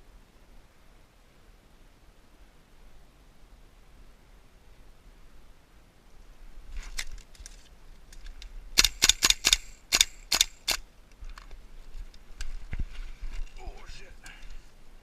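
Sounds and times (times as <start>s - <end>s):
airsoft rifle shots: 8.8s - 10.8s.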